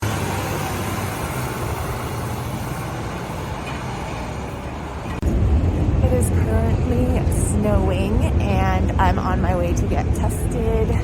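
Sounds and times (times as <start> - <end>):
rumbling noise: 0.0 - 11.0
street traffic hiss: 0.0 - 11.0.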